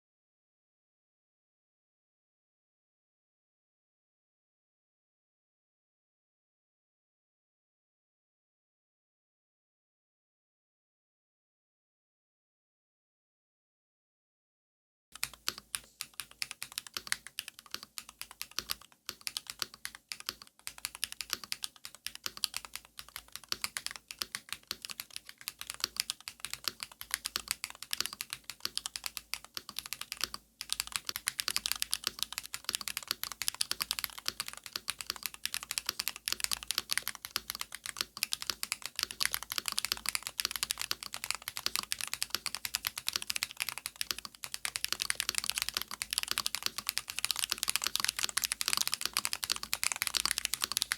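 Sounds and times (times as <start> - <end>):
mechanical keyboard typing: 15.2 - 50.9.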